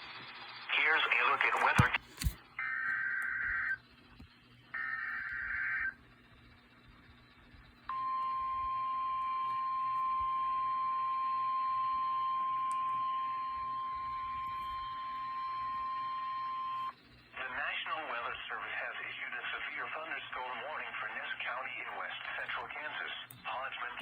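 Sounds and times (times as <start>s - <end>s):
steady single-pitch alarm tone: 7.9s - 17.0s.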